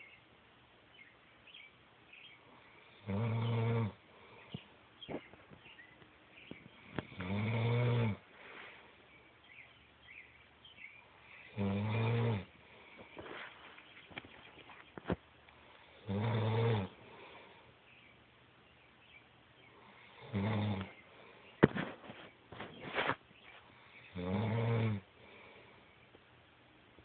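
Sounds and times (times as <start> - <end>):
man snoring: 2.9 - 4.0, 7.1 - 8.2, 11.5 - 12.5, 16.0 - 17.0, 20.1 - 20.9, 24.2 - 25.0
quiet breathing: 3.9 - 14.8, 15.4 - 16.1, 16.8 - 18.2, 19.6 - 21.7, 23.4 - 24.2, 25.0 - 26.2.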